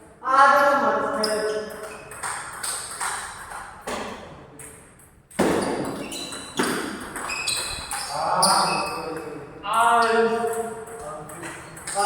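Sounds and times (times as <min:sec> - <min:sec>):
table tennis ball hits: 0:01.6 - 0:08.1, 0:10.1 - 0:12.0.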